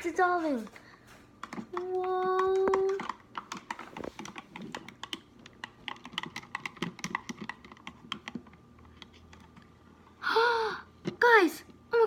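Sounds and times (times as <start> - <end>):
spoon clicking on plastic: 1.4 - 9.6
spoon stirring water: 1.4 - 9.7.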